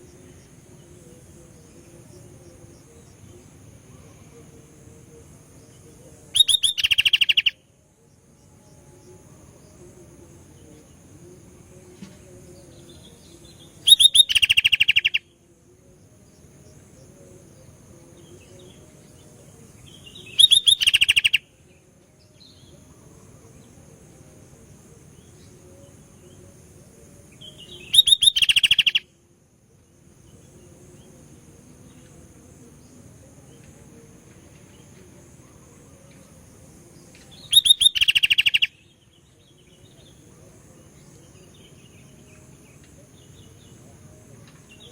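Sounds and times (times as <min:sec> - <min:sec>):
bird chattering song: 0:06.3 - 0:07.6, 0:12.7 - 0:15.4, 0:19.8 - 0:21.6, 0:27.3 - 0:29.1, 0:37.2 - 0:40.2.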